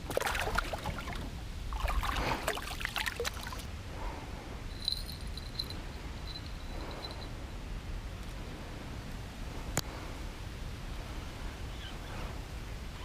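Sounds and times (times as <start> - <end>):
water splashing and trickling: 0.0 - 3.7.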